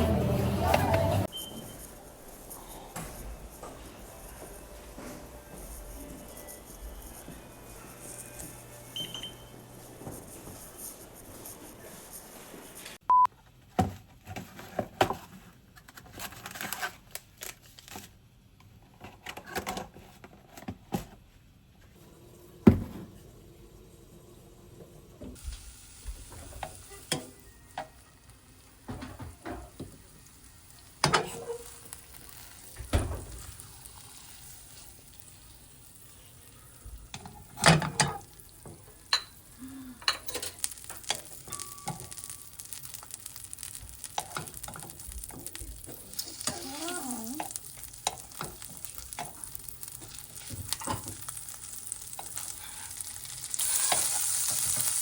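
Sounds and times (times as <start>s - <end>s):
frying pan sizzling: 25.4s - 55.0s
utensils and cookware knocking: 37.1s - 39.4s.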